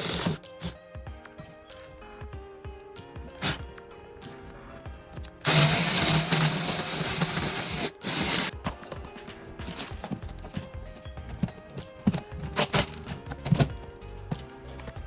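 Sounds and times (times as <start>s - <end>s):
handheld power tool running: 0.0s - 0.8s, 5.4s - 8.5s
background music: 0.0s - 15.0s.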